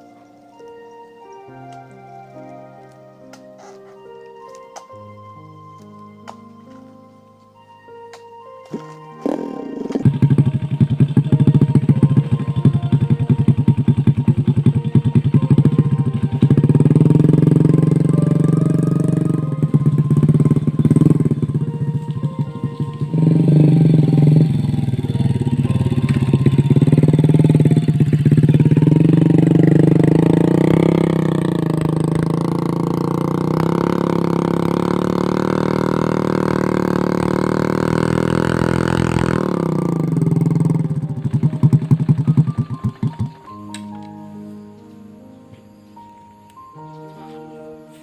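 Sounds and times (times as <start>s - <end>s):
quick uneven engine pulses: 9.2s - 43.4s
motorcycle engine running hard: 9.2s - 43.6s.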